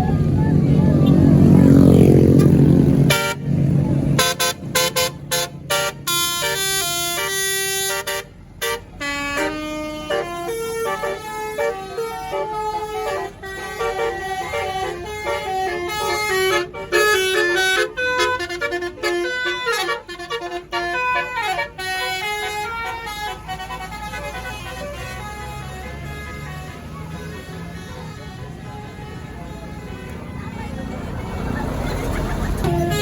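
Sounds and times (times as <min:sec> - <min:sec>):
bus engine low rumble: 0:00.0 - 0:33.0
bus horn playing fast tune: 0:00.9 - 0:33.0.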